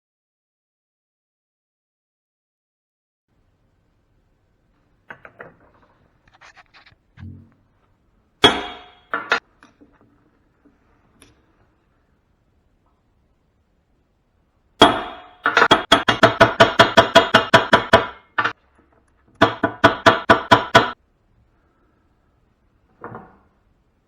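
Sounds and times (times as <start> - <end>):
metal-on-metal hammer strikes: 8.4 - 9.4, 14.8 - 18.6, 19.4 - 21.0.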